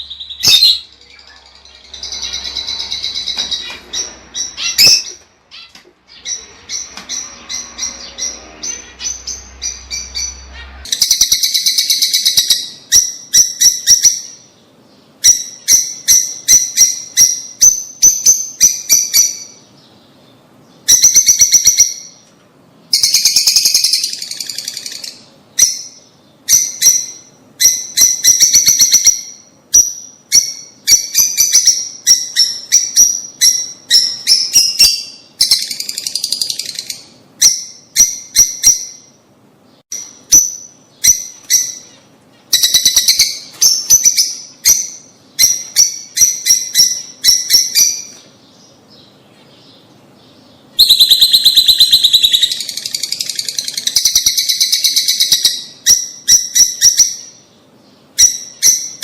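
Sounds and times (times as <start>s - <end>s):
lovebirds chirping: 0.0s - 59.0s.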